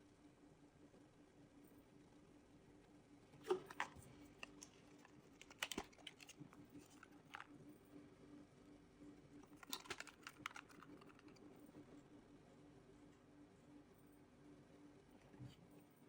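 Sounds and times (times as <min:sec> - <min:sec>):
faint steady hum: 0:00.0 - 0:16.0
packaging being handled: 0:03.4 - 0:07.5, 0:09.4 - 0:11.4.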